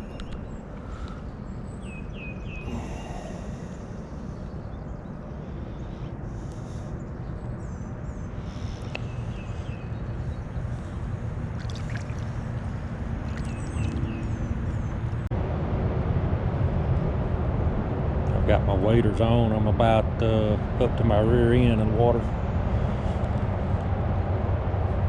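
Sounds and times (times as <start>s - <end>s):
small birds chirping: 0.0s - 15.3s.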